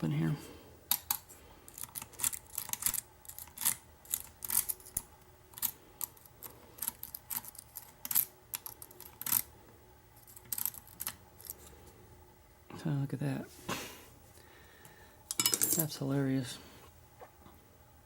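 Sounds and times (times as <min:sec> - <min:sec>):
lock picks clicking and scraping: 0:00.9 - 0:09.5, 0:10.2 - 0:11.7.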